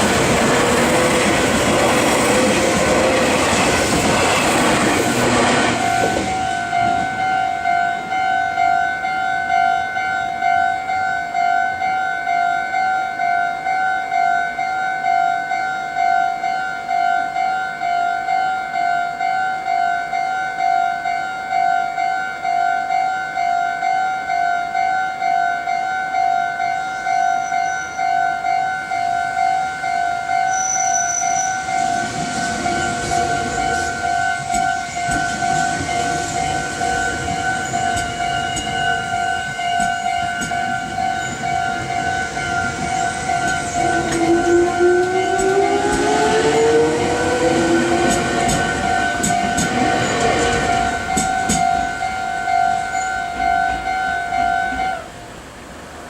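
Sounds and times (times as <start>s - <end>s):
train wheels on rails: 0.0s - 11.8s, 26.6s - 56.0s
level crossing alarm ringing: 0.0s - 55.1s
rail joint clicks: 30.4s - 55.0s.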